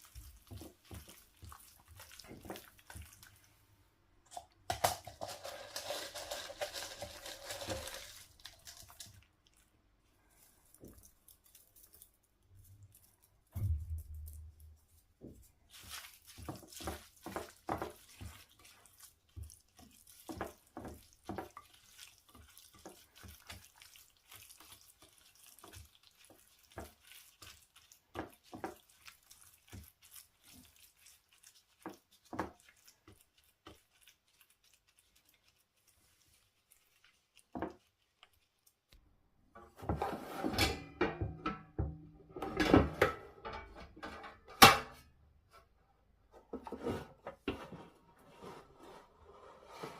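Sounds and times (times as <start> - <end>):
water running: 0.0 - 39.0.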